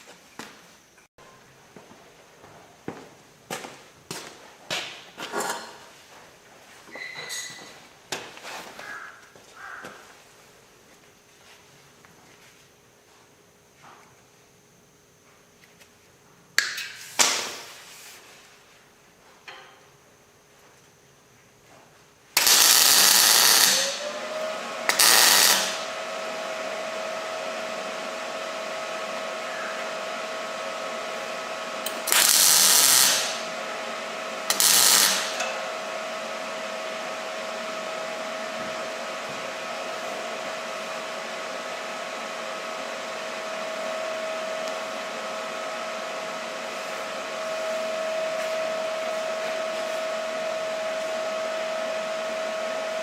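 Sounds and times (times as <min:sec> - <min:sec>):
small electric motor hum: 0:22.4 - 0:53.0.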